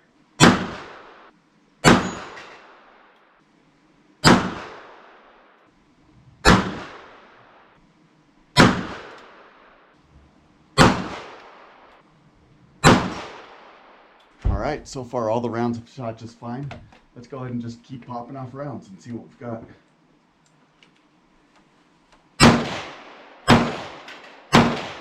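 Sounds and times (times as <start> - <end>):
pistol shots with echo: 0.4 - 3.0, 4.2 - 5.4, 6.4 - 7.4, 8.6 - 9.6, 10.8 - 12.0, 12.8 - 14.1, 22.4 - 25.0.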